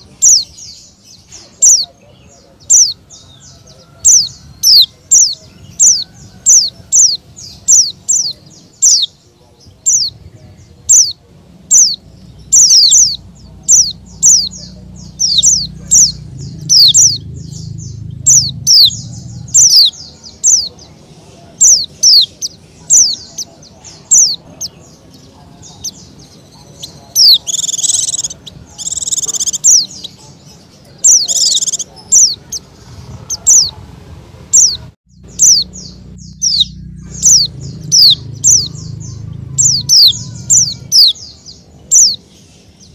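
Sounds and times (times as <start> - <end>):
bird chirping: 0.0 - 33.9, 34.5 - 42.9
steady low hum: 11.6 - 20.6, 32.9 - 41.1
bird squawks: 11.7 - 20.8, 26.8 - 30.4, 31.0 - 32.7, 34.5 - 41.3.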